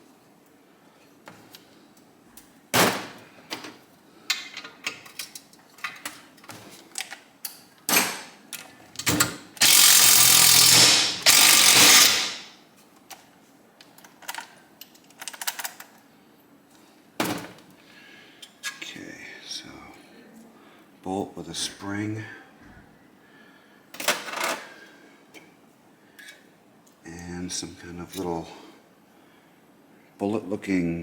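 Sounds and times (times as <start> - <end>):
ratchet and tool clicks and knocks: 8.6 - 12.5.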